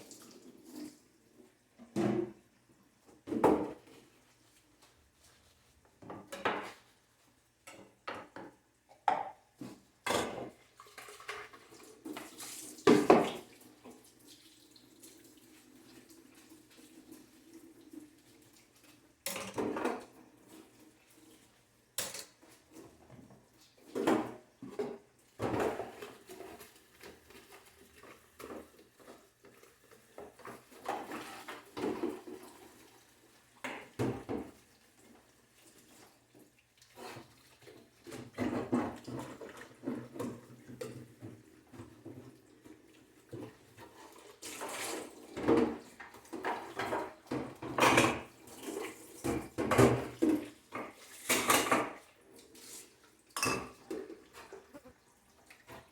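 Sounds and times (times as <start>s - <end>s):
tap water running: 0.0s - 4.1s, 8.1s - 55.9s
dishes and cutlery clattering: 10.0s - 11.7s, 19.2s - 20.6s, 22.0s - 23.0s, 38.0s - 42.2s, 43.3s - 52.1s, 53.3s - 54.8s.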